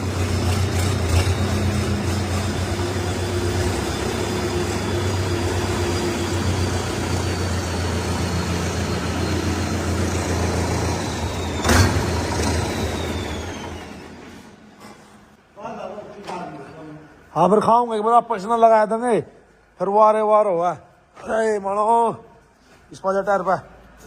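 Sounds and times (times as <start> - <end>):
tractor diesel engine running: 0.0 - 14.6.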